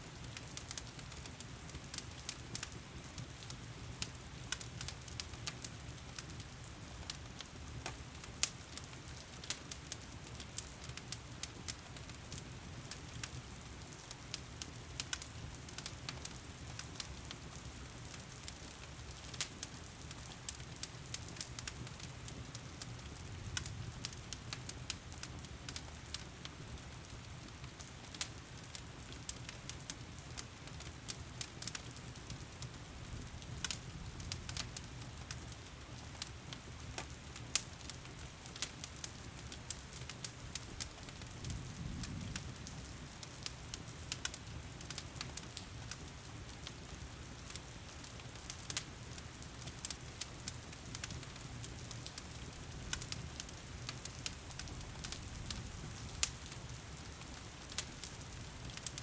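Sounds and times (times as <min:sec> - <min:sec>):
log fire crackling: 0:00.0 - 0:59.0
rain hiss: 0:19.3 - 0:59.0.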